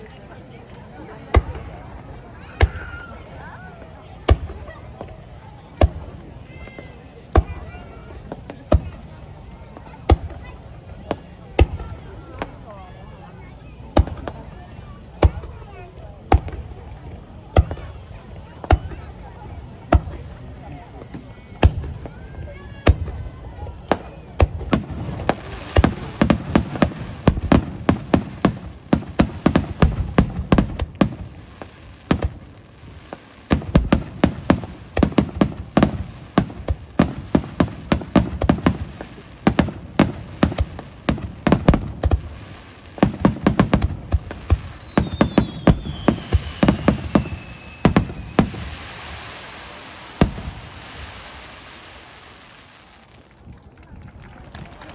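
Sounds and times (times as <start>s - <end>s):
fireworks bangs and crackles: 0.0s - 54.9s
hiss: 5.8s - 53.0s
falling whistle: 44.2s - 48.6s.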